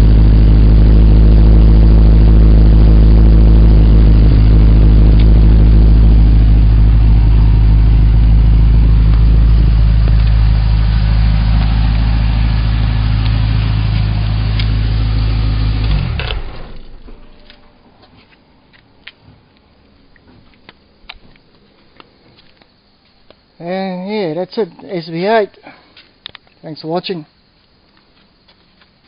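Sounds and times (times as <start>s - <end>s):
loud car engine idling: 0.0s - 17.8s.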